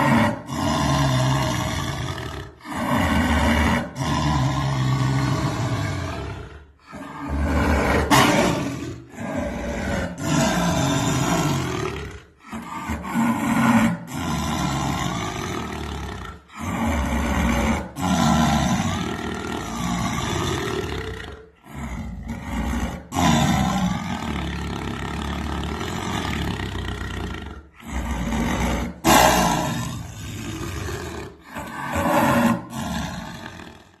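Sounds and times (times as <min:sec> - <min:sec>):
jaguar growling calls: 0:00.0 - 0:34.0.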